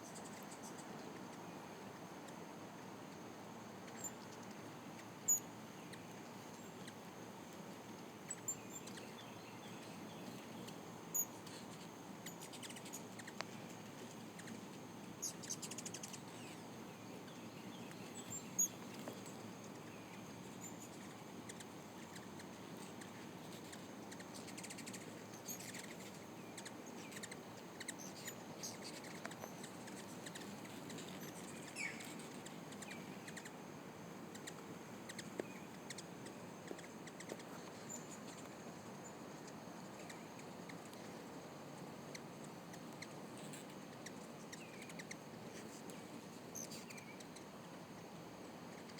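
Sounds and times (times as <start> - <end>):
faint steady hiss: 0.0 - 48.9
hummingbird chips and squeaks: 8.3 - 9.2, 9.8 - 16.6, 17.9 - 33.6, 34.3 - 38.5, 42.2 - 45.8, 46.6 - 47.3.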